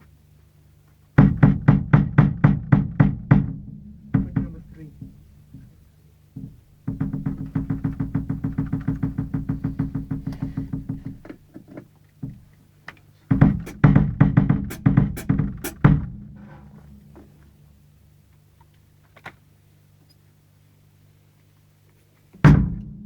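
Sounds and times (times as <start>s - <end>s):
drum roll on low drum: 1.2s - 11.3s, 13.3s - 17.9s, 22.5s - 23.0s
drum fill with cymbal crashes: 13.4s - 17.1s.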